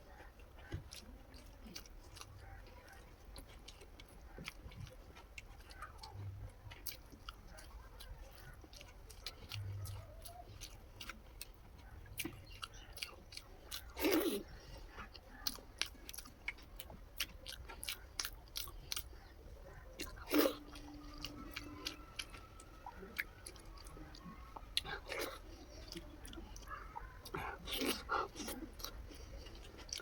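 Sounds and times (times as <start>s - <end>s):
wet mouth chewing clicks: 0.1s - 30.0s
crunchy bites: 12.2s - 30.0s.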